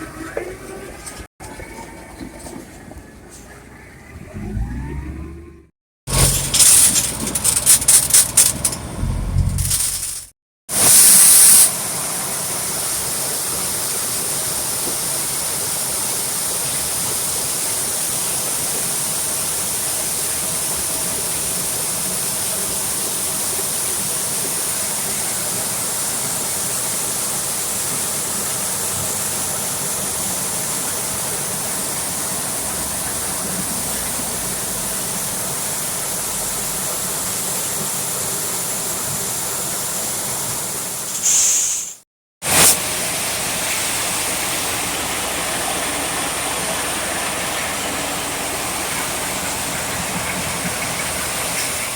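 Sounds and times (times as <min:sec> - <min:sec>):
concrete plant rushing noise: 0:06.1 - 0:14.6.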